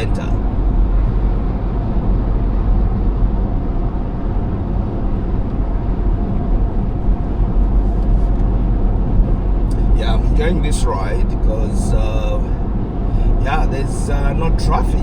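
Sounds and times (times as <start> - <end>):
car tyres and engine rumbling: 0.0 - 15.0.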